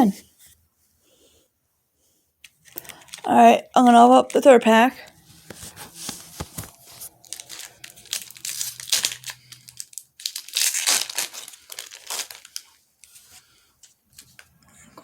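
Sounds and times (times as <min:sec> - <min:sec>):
wrapper crinkling and tearing: 0:02.6 - 0:03.4, 0:05.5 - 0:13.3.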